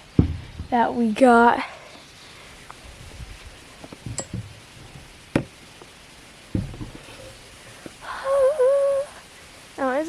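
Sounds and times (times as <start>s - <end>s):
handling knocks on camera: 6.5s - 7.0s
high wavering voice: 8.0s - 9.2s.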